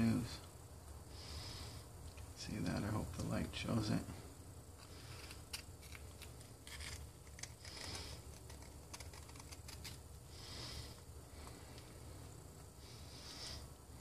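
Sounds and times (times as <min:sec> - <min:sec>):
soft breaths: 0:00.2 - 0:02.2, 0:10.2 - 0:14.0.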